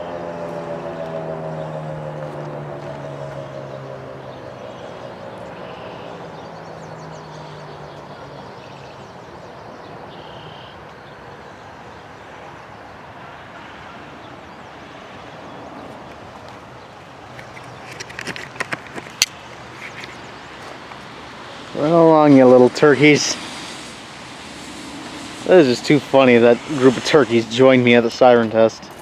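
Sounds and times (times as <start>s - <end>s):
steady background rush: 17.4s - 29.0s.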